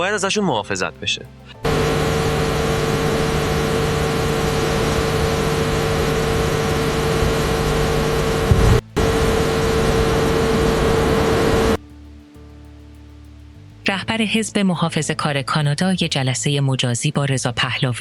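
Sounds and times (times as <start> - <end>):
machine humming loudly: 1.6 - 11.8.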